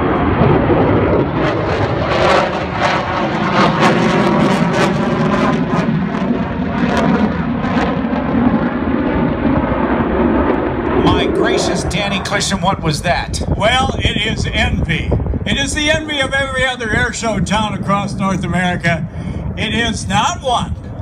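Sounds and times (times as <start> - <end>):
fighter jets flying past: 0.0 - 21.0.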